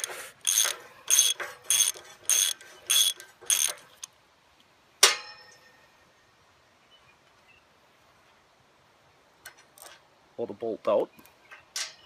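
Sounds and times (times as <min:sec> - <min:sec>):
ratchet clicking: 0:00.0 - 0:04.1
metal clank ringing: 0:05.0 - 0:05.8.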